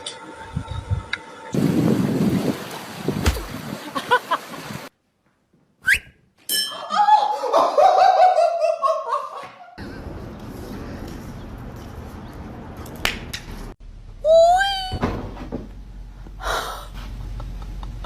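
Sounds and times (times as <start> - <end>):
person laughing: 16.4 - 18.0.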